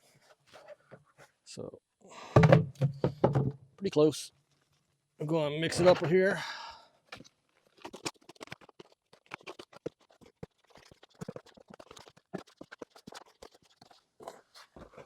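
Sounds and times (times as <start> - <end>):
gritty scratches and scrapes: 7.1 - 15.0.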